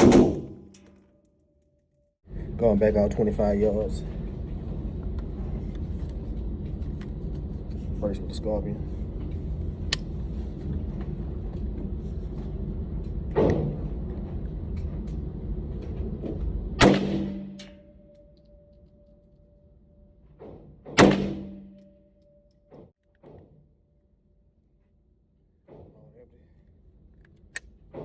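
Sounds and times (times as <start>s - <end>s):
sharp gunshots: 0.0s - 0.8s, 16.8s - 17.7s, 21.0s - 21.8s.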